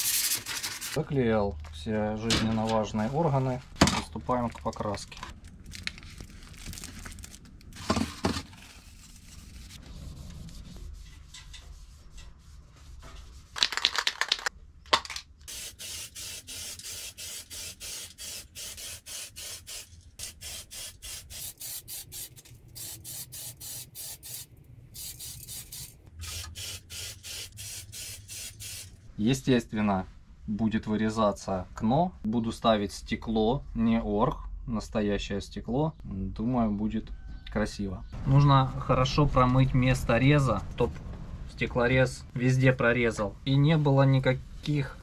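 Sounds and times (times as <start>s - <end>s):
spray paint can hissing bursts: 15.5s - 29.0s.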